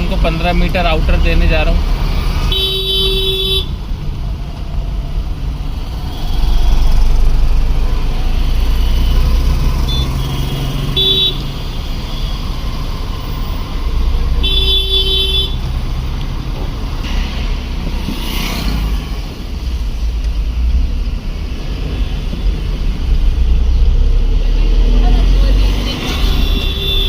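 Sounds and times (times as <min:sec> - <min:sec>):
road and wind noise: 0:00.0 - 0:27.0
vehicle horn honking: 0:02.5 - 0:03.7, 0:09.9 - 0:11.5, 0:14.4 - 0:15.6, 0:26.2 - 0:27.0.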